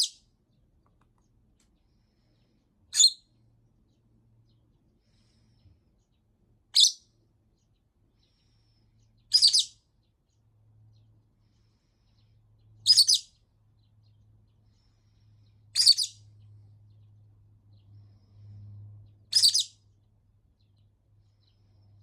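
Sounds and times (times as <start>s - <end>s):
lovebird shrill calls: 2.9s - 3.2s, 6.8s - 7.0s, 9.3s - 9.7s, 12.8s - 13.3s, 15.8s - 16.2s, 19.3s - 19.7s.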